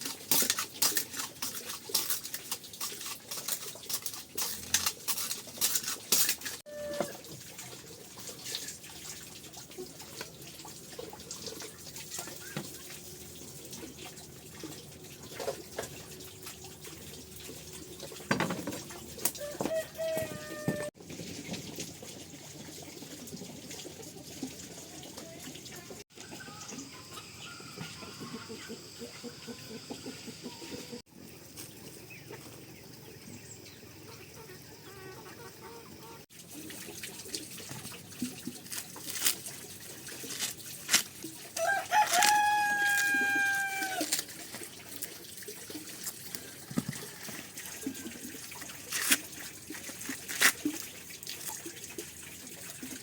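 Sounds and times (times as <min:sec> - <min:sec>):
rooster crowing: 0:19.4 - 0:20.9, 0:41.6 - 0:44.2.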